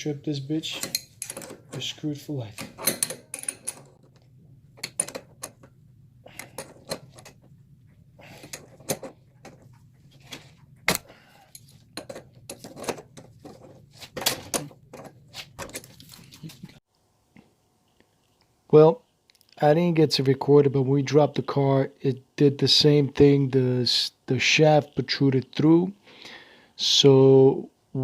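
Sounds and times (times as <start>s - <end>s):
metal tools clicking and clinking: 0.6s - 5.7s, 6.3s - 7.5s, 8.3s - 16.0s.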